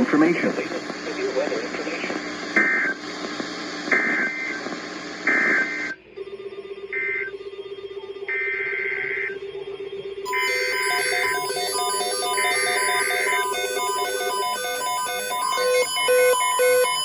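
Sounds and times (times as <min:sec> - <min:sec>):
radio hiss: 0:00.0 - 0:05.9
screechy digital data bursts: 0:10.3 - 0:17.0
stepped beeping tones: 0:10.3 - 0:17.0.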